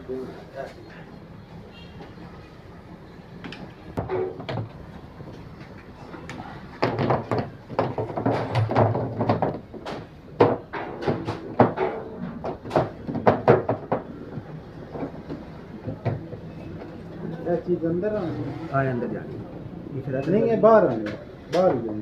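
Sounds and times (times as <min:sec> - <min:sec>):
loud sharp knocks: 0:06.8 - 0:16.4
plastic and metal parts clattering: 0:06.9 - 0:10.1.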